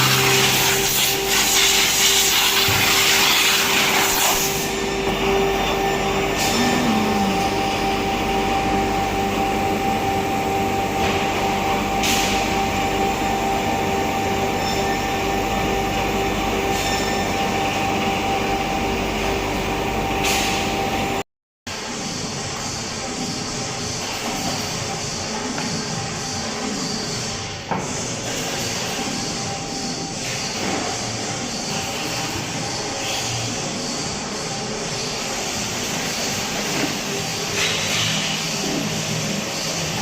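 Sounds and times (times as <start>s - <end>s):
cnc router running with whine: 0.0s - 21.2s.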